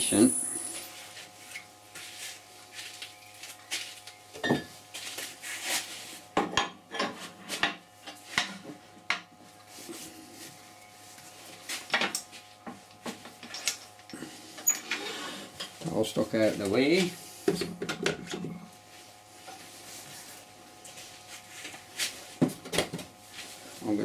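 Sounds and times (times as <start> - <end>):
faint steady hum: 0.0 - 1.1.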